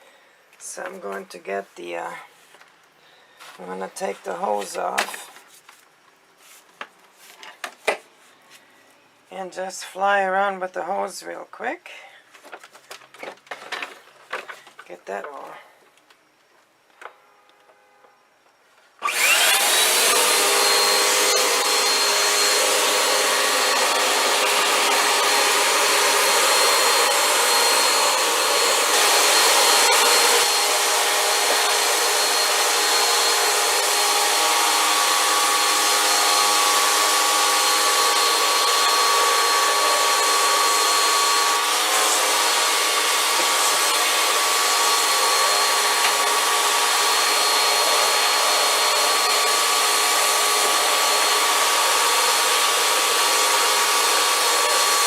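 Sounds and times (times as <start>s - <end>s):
vacuum cleaner motor whine: 19.0s - 55.0s.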